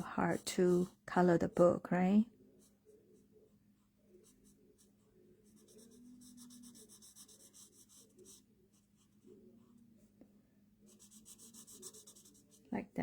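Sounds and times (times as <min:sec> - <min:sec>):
colouring strokes on paper: 0:00.0 - 0:01.7, 0:02.4 - 0:10.2, 0:10.8 - 0:13.0.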